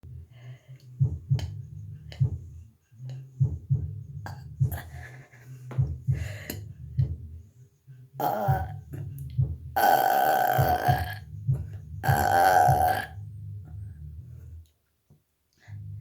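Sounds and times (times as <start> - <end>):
girl burping loudly: 8.2 - 8.8, 9.8 - 11.2, 12.0 - 13.2.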